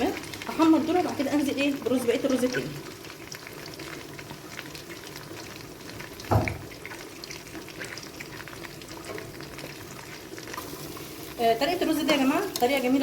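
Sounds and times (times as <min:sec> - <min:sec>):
rice sizzling in hot oil: 0:00.0 - 0:13.0
dull knock: 0:06.3 - 0:06.7.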